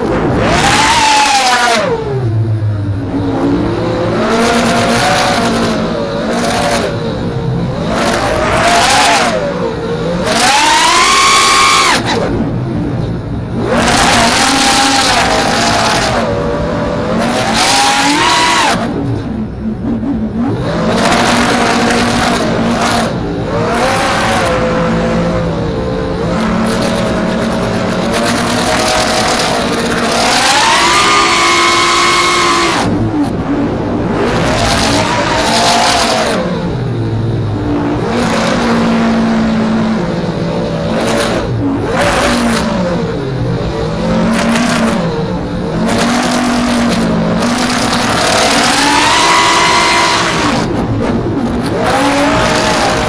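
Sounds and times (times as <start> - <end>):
quadcopter motors whining: 0.0 - 12.4, 21.0 - 33.1
rushing noise: 0.0 - 53.0.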